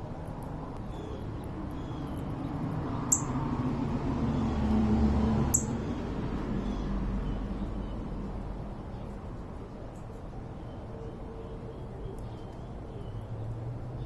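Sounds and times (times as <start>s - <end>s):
passing vehicle rumble: 1.6s - 9.8s.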